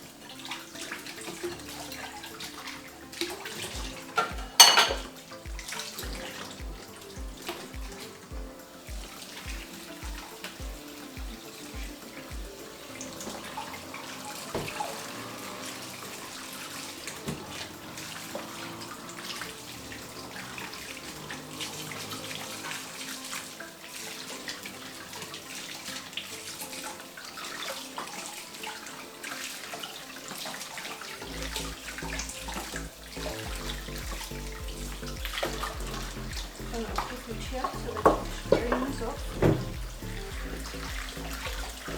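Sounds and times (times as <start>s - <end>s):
tap water running into sink: 0.0s - 41.9s
utensils clinking: 0.0s - 41.9s.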